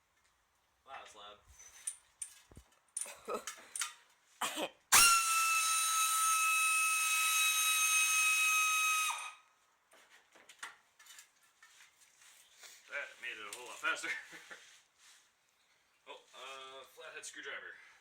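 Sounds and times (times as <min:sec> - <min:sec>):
air ratchet whining: 0:04.9 - 0:09.4.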